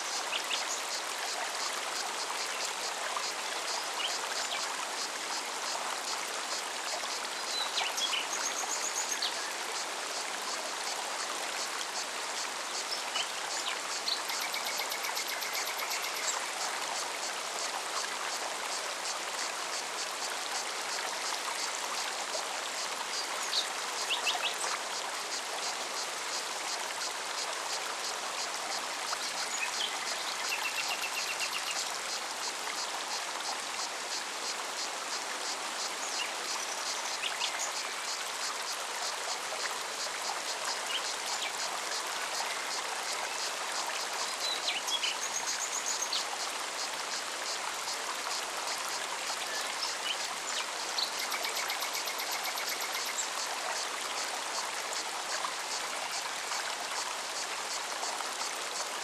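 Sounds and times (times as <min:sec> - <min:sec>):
stream over rocks: 0:00.0 - 0:59.0
cicadas pulsing: 0:09.4 - 0:55.1.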